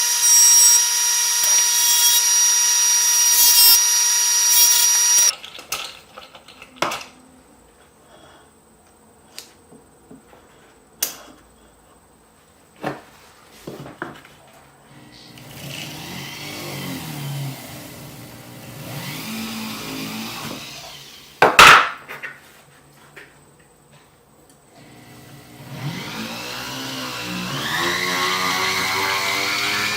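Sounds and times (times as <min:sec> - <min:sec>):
small electric power tool running: 0:00.0 - 0:05.3, 0:15.0 - 0:21.2, 0:24.8 - 0:29.9.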